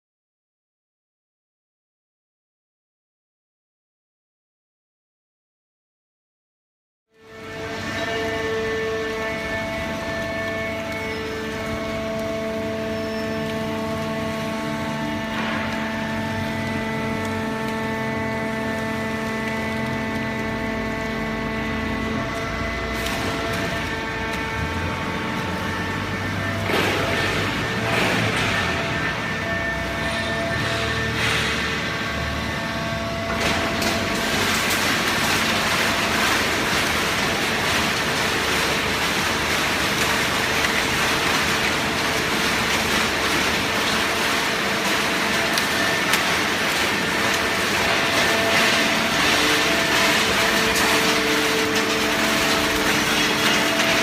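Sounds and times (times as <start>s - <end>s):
electric motor and pump humming: 7.1s - 54.0s.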